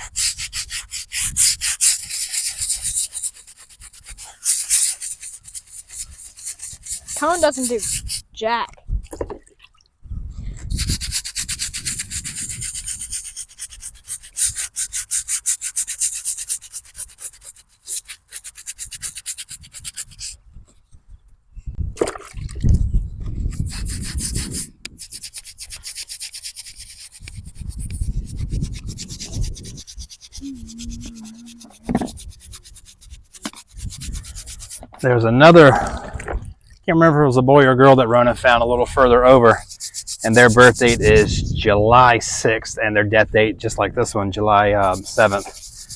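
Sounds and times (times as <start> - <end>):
brush scrubbing stone: 0.0 - 8.2, 10.7 - 20.4, 23.5 - 35.2, 38.4 - 41.4, 44.6 - 45.9.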